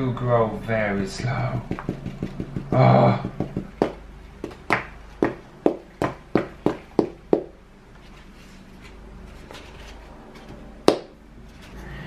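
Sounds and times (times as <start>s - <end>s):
sharp knocks: 1.5s - 7.6s.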